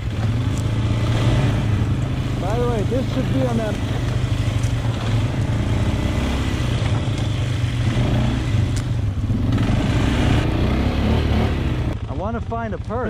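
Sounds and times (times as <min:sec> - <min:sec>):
atv engine running: 0:00.0 - 0:13.0.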